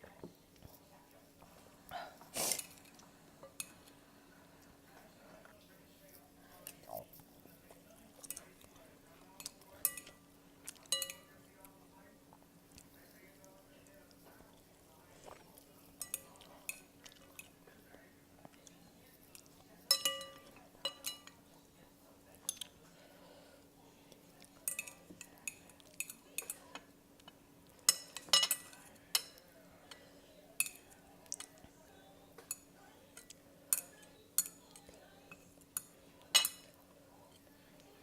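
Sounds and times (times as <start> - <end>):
faint steady hum: 0.0 - 38.0
utensils clinking against a bowl: 8.2 - 11.6, 15.8 - 17.6, 19.3 - 21.4, 24.5 - 31.6, 32.4 - 36.8.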